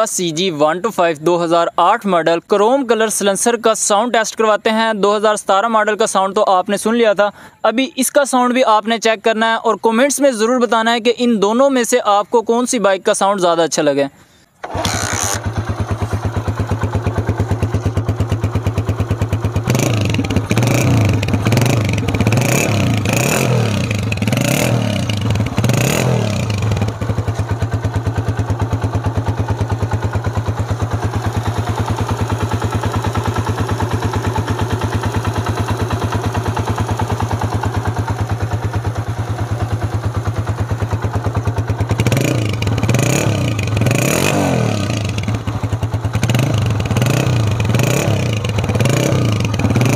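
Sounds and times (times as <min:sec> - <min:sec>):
motorcycle engine idling and revving: 0:14.6 - 0:49.9.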